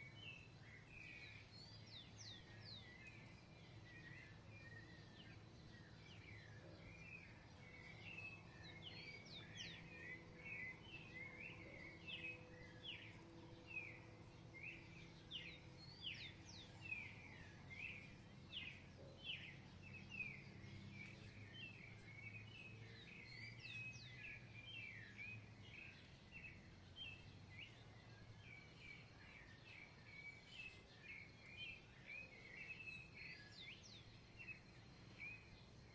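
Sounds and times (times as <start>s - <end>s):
birds chirping and singing: 0.0s - 35.9s.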